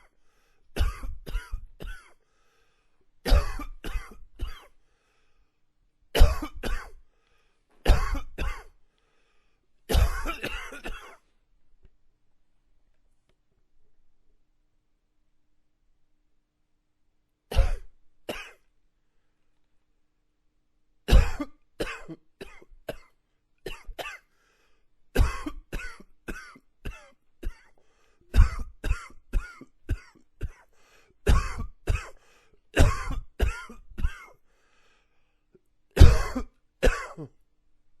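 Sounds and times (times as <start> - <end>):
man coughing: 0.8 - 2.2, 3.3 - 4.8, 6.2 - 7.0, 7.9 - 8.8, 9.9 - 11.2, 17.5 - 18.6, 21.1 - 23.1, 23.7 - 24.3, 25.2 - 30.7, 31.3 - 32.2, 32.8 - 34.4, 36.0 - 37.4.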